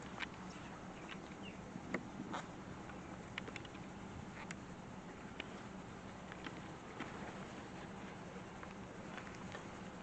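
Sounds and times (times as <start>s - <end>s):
honeybees humming: 0.0s - 10.0s.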